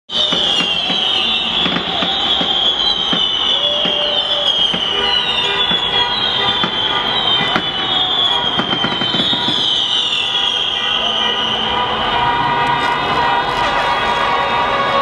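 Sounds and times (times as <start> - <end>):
people shouting: 0.1 - 9.5, 10.4 - 15.0
fireworks cracking and popping: 0.1 - 10.9
car horns honking: 0.1 - 15.0.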